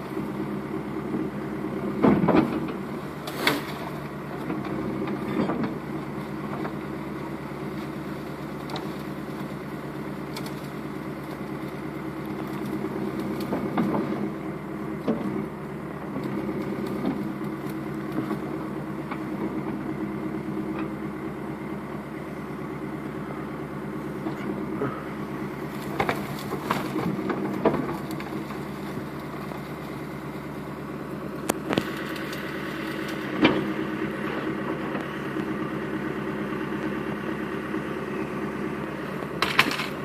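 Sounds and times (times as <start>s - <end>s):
backhoe engine running: 0.0s - 40.0s
knocks and clanks: 25.8s - 28.6s.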